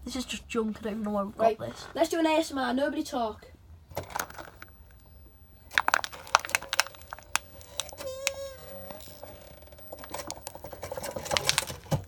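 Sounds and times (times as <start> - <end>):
junk cracking under tyre: 3.9 - 12.0
steady whine: 3.9 - 12.0.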